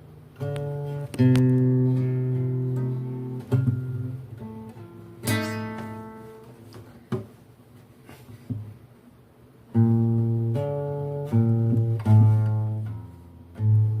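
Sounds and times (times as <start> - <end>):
acoustic guitar chords: 0.0 - 7.4, 9.6 - 14.0.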